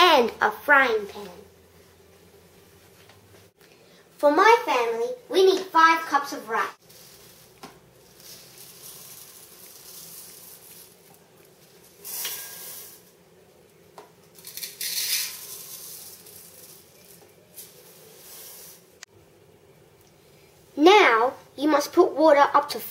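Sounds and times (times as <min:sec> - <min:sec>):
rice pouring into pot: 0:06.8 - 0:13.2, 0:14.4 - 0:19.0
cup clinking and scraping pot: 0:12.0 - 0:13.1.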